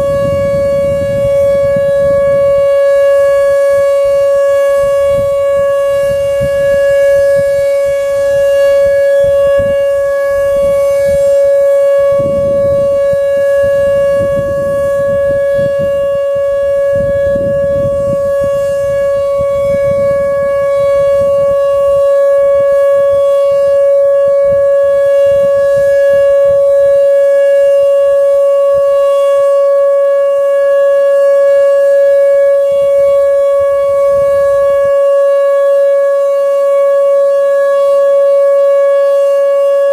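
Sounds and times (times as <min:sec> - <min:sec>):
outdoor warning siren steady tone: 0:00.0 - 0:39.9.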